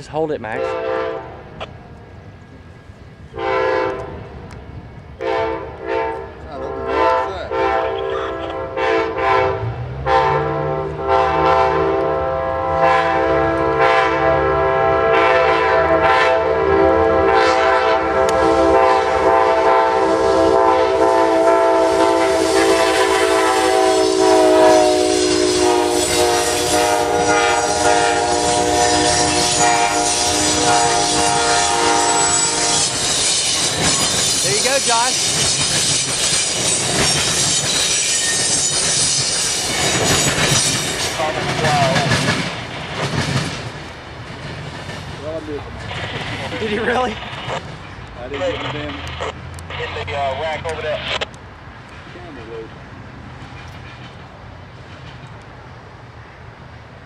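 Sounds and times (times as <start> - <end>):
locomotive air horn blasts: 0.5 - 1.4, 3.3 - 4.2, 5.2 - 34.8.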